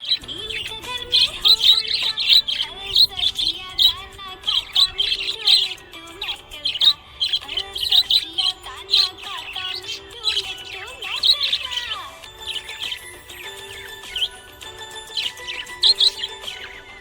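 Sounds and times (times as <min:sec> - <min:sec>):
budgerigar chirping: 0:00.0 - 0:17.0.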